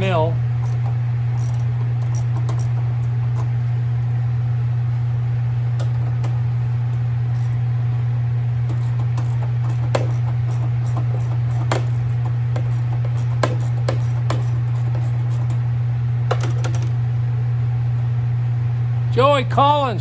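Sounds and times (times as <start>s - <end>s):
steady low hum: 0.0s - 20.0s
hand tools clicking and clinking: 0.6s - 3.5s, 8.7s - 15.6s.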